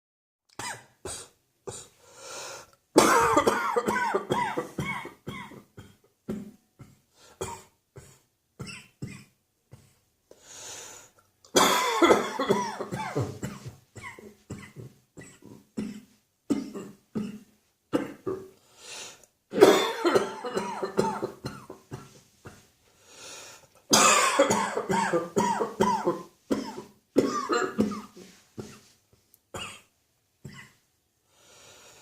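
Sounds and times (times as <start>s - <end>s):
person coughing: 3.0s - 10.0s, 11.5s - 18.5s, 19.5s - 22.6s, 23.9s - 28.9s, 29.6s - 30.8s.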